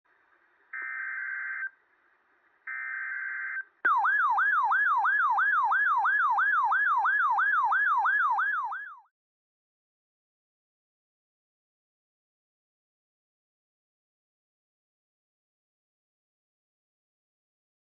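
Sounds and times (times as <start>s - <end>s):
electronic siren tone sweeping: 2.7s - 9.0s.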